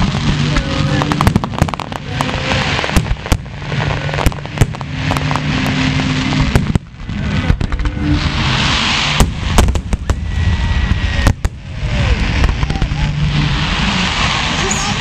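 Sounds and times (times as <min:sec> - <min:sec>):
fireworks bangs: 0:00.0 - 0:15.0
fireworks crackling hiss: 0:00.0 - 0:15.0.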